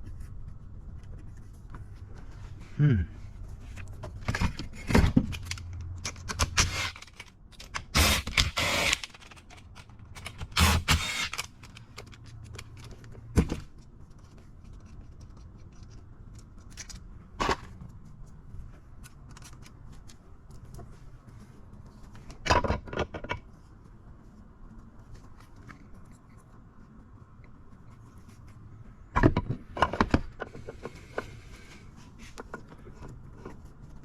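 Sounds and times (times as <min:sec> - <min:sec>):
metal parts clicking and clinking: 0:04.3 - 0:13.2.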